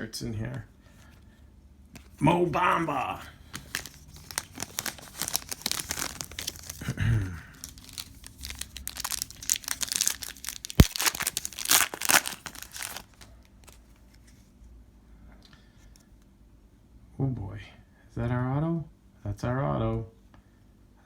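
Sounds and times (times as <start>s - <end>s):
card pack wrapper tearing and crinkling: 2.6s - 14.2s.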